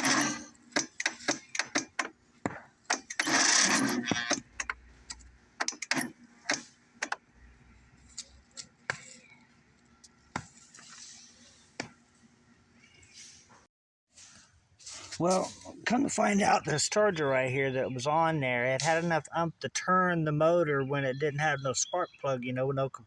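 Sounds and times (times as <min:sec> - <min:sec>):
electric starter clicking and whirring: 0:00.0 - 0:07.4.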